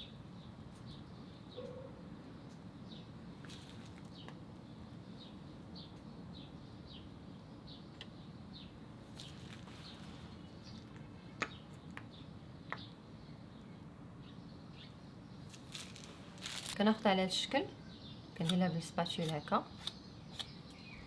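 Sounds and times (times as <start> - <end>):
small bird chirping: 19.2 - 21.0.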